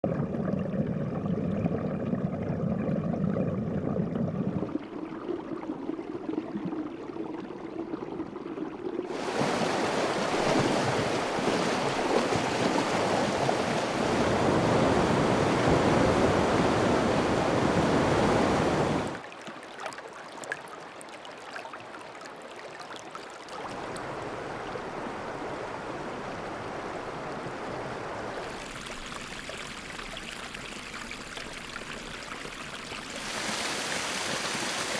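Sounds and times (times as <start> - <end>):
deep rumbling water flow: 0.0 - 19.3, 23.6 - 34.9
fast water rushing: 9.1 - 19.2, 32.8 - 34.9
brook trickling and dripping: 19.2 - 25.4, 28.1 - 34.9.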